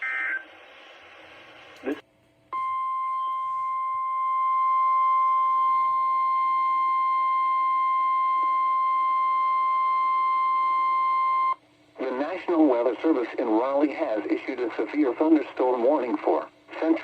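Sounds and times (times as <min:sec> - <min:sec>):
steady alarm beep: 0:02.6 - 0:11.6.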